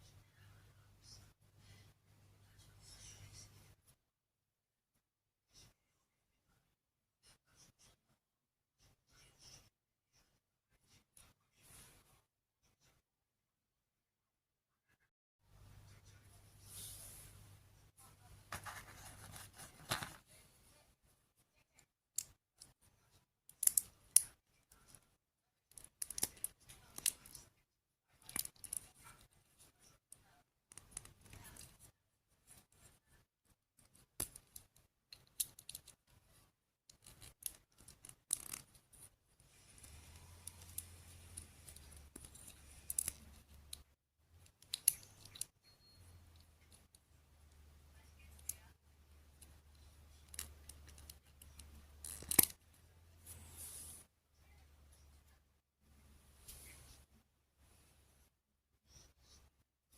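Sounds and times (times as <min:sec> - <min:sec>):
plastic toy parts clicking: 0:23.5 - 0:24.3, 0:25.7 - 0:27.4, 0:28.2 - 0:28.9, 0:33.8 - 0:36.0, 0:36.9 - 0:38.8, 0:41.6 - 0:43.8, 0:44.4 - 0:45.5, 0:50.2 - 0:52.6.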